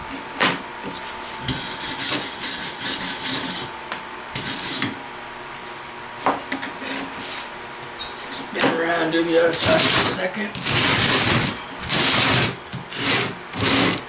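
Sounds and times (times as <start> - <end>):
hand scraping metal: 4.4 - 4.9, 9.6 - 14.0.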